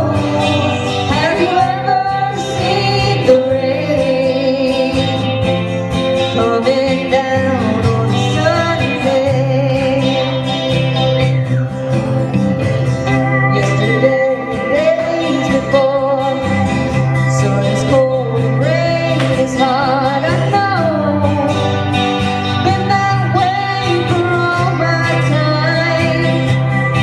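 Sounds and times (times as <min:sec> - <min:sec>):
bass: 0:00.0 - 0:27.0
guitar: 0:00.0 - 0:27.0
sliding lead instrument line: 0:09.4 - 0:27.0.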